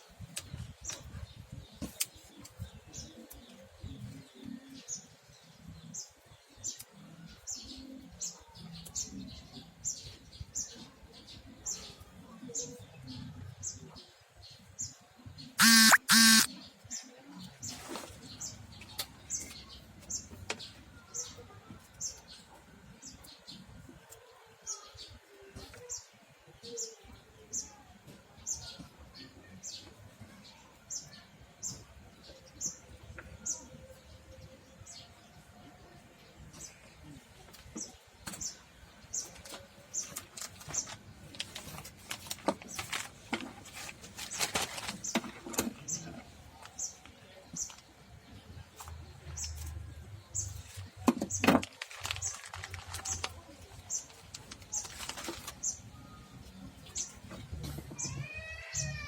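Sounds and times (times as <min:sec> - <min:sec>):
small birds chirping: 0:00.0 - 0:59.0
bird chirping: 0:11.7 - 0:16.8
loud buzzing tone: 0:15.6 - 0:16.5
sharp clicks: 0:15.6 - 0:16.5.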